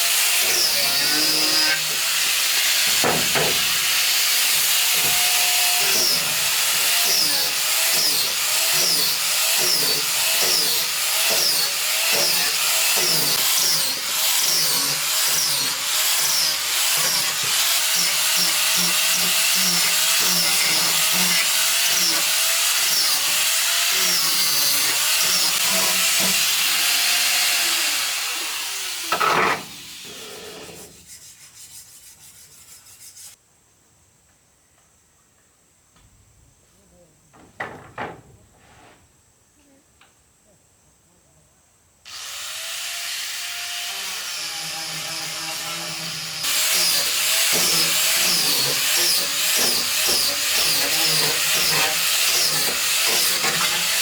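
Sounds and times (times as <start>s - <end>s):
power tool cutting wood: 0.0s - 30.9s, 42.1s - 54.0s.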